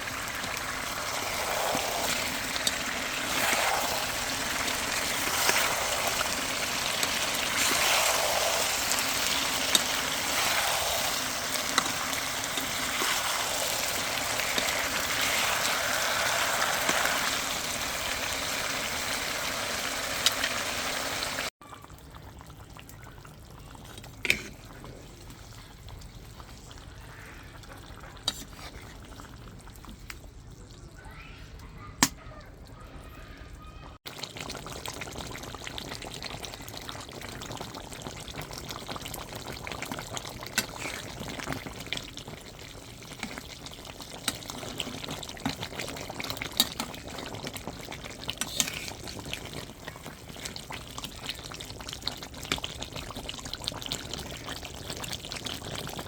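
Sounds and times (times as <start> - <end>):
cooking hiss: 0.0 - 21.5, 34.2 - 56.0.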